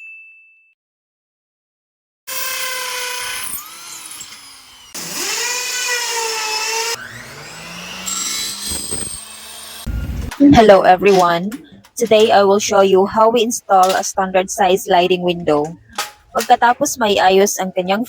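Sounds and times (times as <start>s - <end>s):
electric power drill running: 2.3s - 10.4s.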